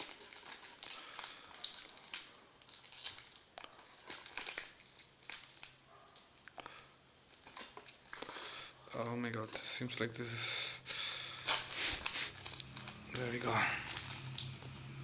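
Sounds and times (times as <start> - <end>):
card pack wrapper crinkling: 0.0 - 10.3, 10.9 - 15.0.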